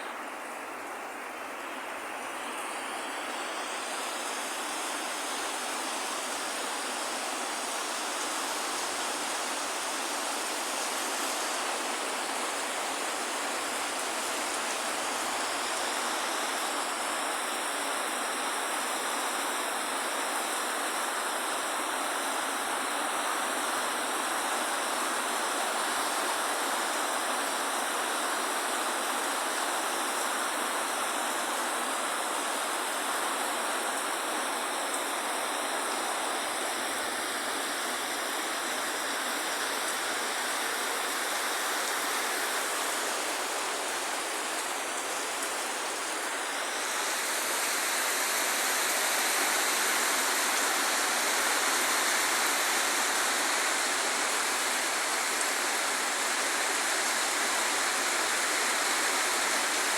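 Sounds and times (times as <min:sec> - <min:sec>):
heavy rain falling: 0:10.4 - 0:59.9.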